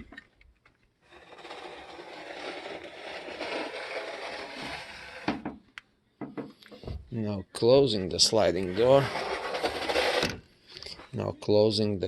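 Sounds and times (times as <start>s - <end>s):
sliding door rolling on track: 1.2s - 5.3s.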